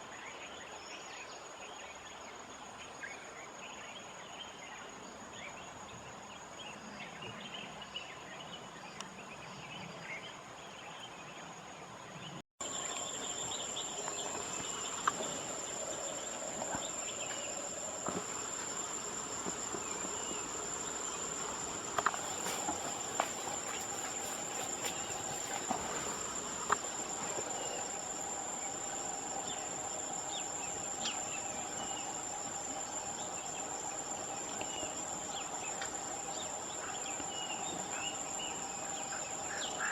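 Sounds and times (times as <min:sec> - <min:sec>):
crickets droning: 0:00.0 - 0:39.9
faint insect chirps and clicks: 0:08.9 - 0:09.9, 0:12.6 - 0:39.9.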